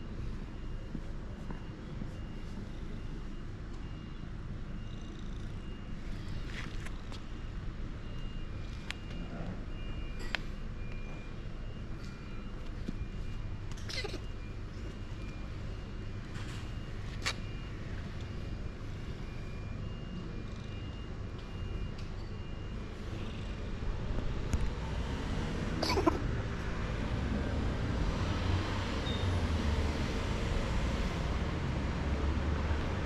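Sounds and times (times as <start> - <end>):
low rumble of road traffic: 0.0 - 33.0
vehicle approaching: 23.1 - 33.0.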